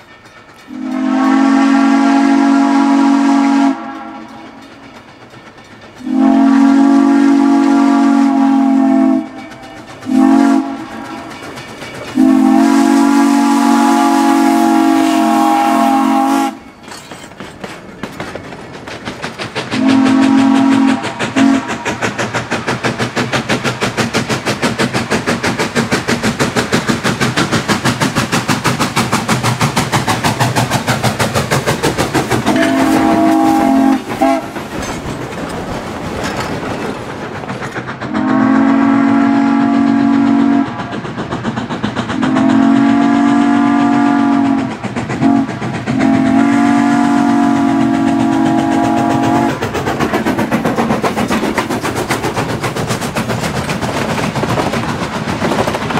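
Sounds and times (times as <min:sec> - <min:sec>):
moving train beat: 0:00.0 - 0:55.9
steam whistle blasts: 0:00.7 - 0:04.6, 0:06.0 - 0:11.4, 0:12.2 - 0:16.7, 0:19.8 - 0:22.0, 0:32.4 - 0:34.5, 0:38.1 - 0:40.9, 0:42.2 - 0:49.6.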